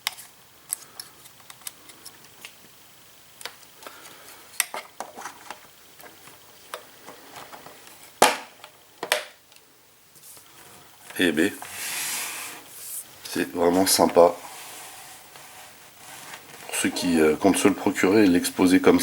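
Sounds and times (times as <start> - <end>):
plastic parts clicking and tapping: 4.6 - 9.6.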